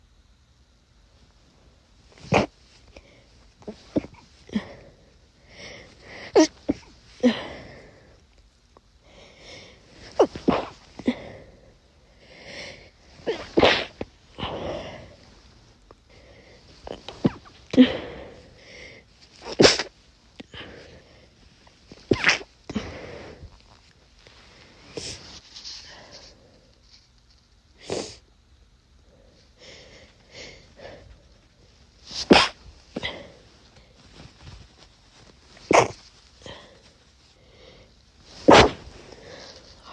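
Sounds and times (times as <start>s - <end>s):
stifled sneezes: 2.1s - 2.8s, 3.6s - 4.9s, 5.8s - 7.8s, 9.9s - 11.4s, 13.1s - 15.4s, 16.7s - 18.5s, 19.3s - 21.0s, 21.9s - 23.6s, 24.9s - 25.4s, 32.0s - 37.0s, 38.2s - 39.9s
sniffs and breaths: 9.0s - 28.2s, 29.1s - 39.9s.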